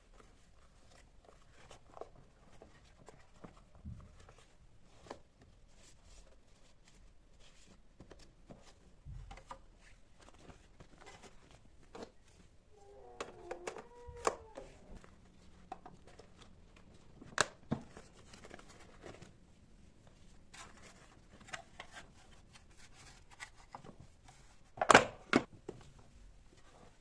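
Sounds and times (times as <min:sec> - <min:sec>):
objects being handled clicks and knocks: 0:07.5 - 0:19.3.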